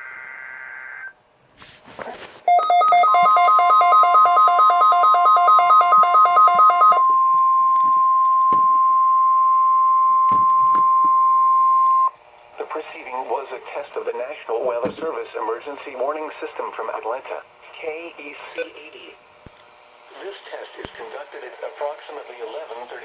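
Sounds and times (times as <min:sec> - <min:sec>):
rapid pulsing beep: 0:02.5 - 0:12.1
steady warning alarm tone: 0:02.5 - 0:12.2.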